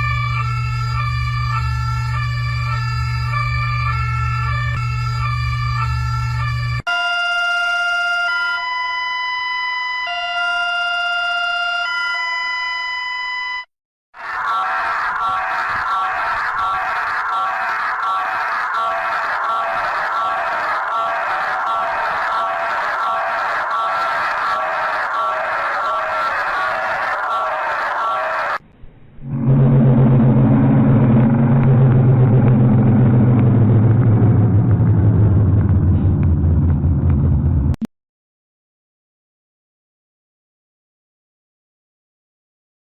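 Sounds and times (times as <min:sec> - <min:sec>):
low buzzing drone: 0:00.0 - 0:06.8, 0:28.6 - 0:37.8
two-tone hi-lo alarm: 0:00.0 - 0:13.6.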